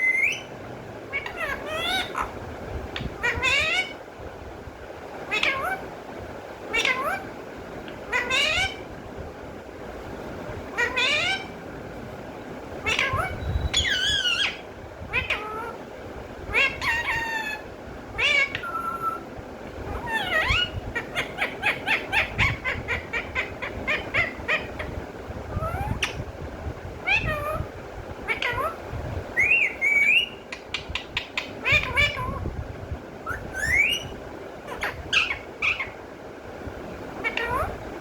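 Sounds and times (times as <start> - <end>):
parrot squawks and whistles: 0.0 - 0.5, 12.9 - 15.8, 18.2 - 19.2, 29.4 - 32.4, 33.2 - 34.1, 34.7 - 36.0.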